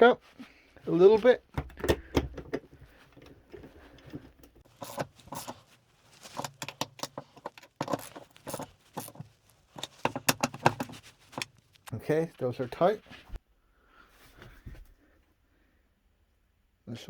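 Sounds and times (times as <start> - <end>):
ratchet wrench clicking: 4.7 - 11.9.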